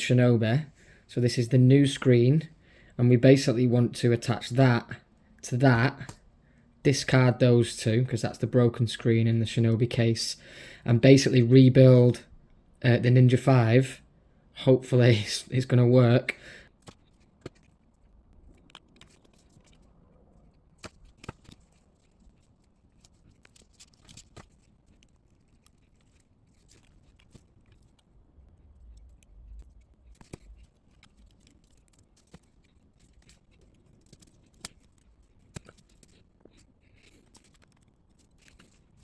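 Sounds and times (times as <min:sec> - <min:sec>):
low rumble: 0:28.3 - 0:30.6.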